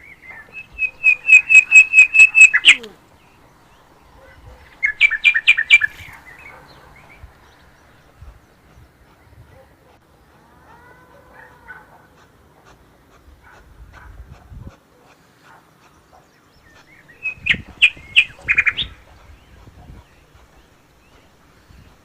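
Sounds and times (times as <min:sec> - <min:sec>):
bird chirping: 0:00.0 - 0:10.4, 0:15.8 - 0:22.0.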